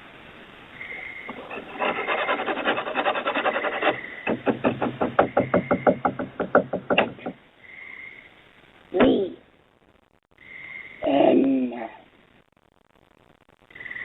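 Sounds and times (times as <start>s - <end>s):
scratching and knocking on door: 1.3s - 7.4s.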